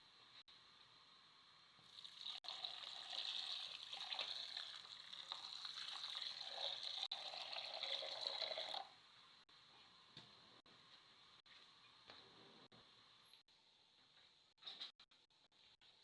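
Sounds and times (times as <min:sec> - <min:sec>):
water pouring: 0:01.8 - 0:08.9.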